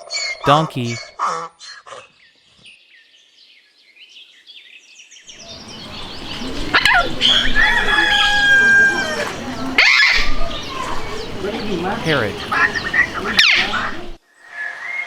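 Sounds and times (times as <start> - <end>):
birds chirping: 5.3 - 14.2
donkey braying: 5.4 - 14.2.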